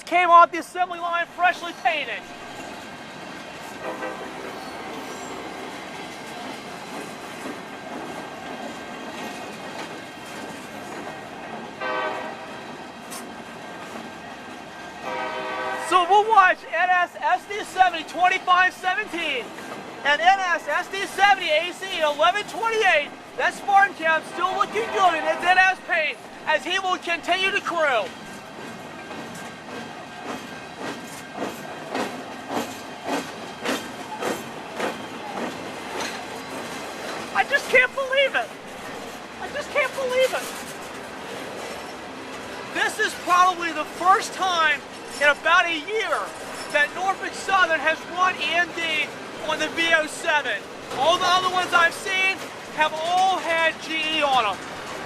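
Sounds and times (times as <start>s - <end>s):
freight train rumble: 0.0s - 55.0s
wheels clacking over rail: 0.8s - 16.4s, 17.3s - 55.0s
train horn blast: 3.8s - 5.2s, 11.8s - 12.7s, 15.0s - 16.0s.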